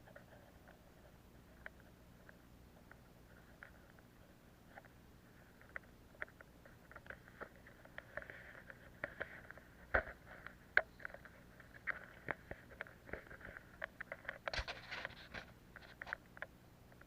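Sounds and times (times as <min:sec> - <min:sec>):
faint low hum: 0:00.0 - 0:17.0
light clicks and rattles: 0:00.0 - 0:17.0.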